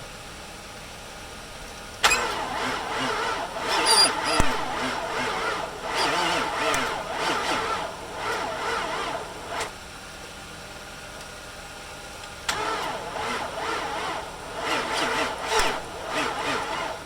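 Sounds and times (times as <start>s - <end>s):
starter motor cranking slowly: 2.0s - 9.9s, 12.5s - 17.0s.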